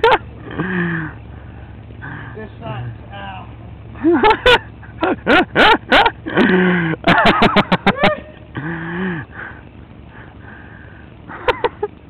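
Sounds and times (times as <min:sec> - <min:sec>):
man crying out in pain: 0:07.8 - 0:09.3.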